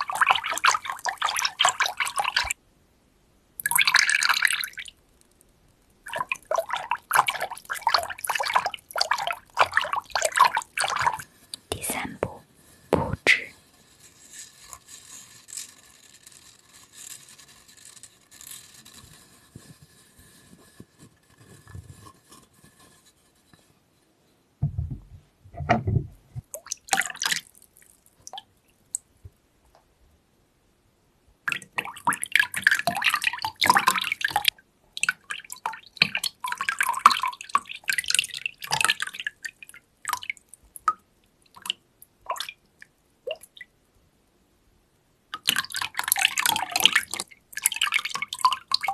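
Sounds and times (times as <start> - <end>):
faint water trickle: 0.0 - 2.6, 3.6 - 12.8, 26.4 - 29.8, 31.4 - 43.7, 45.3 - 48.9
water splashing and dripping: 0.0 - 2.6, 3.6 - 5.0, 6.0 - 12.4, 26.4 - 29.0, 31.5 - 42.6, 45.3 - 48.9
dull knock: 24.6 - 26.5.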